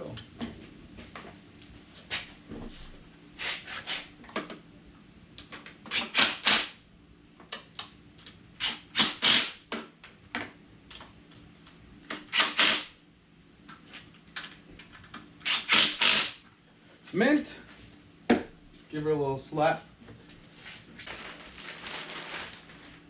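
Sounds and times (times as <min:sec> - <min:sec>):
cordless impact drill bursts: 0:08.6 - 0:09.6, 0:12.3 - 0:12.9, 0:15.4 - 0:16.4.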